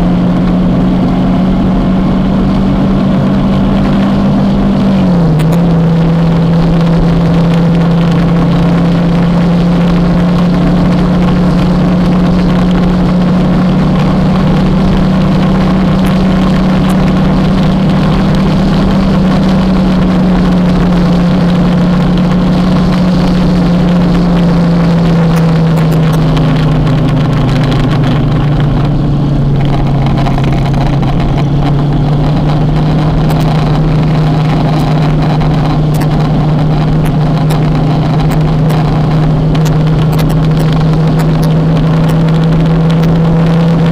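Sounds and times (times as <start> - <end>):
motorcycle engine running: 0.0 - 43.9
wind and road noise: 0.0 - 43.9.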